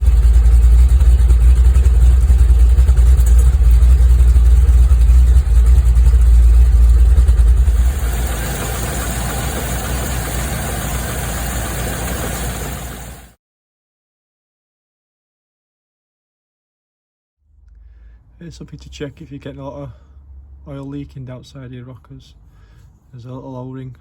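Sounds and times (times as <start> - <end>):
engine idling low rumble: 0.0 - 13.3.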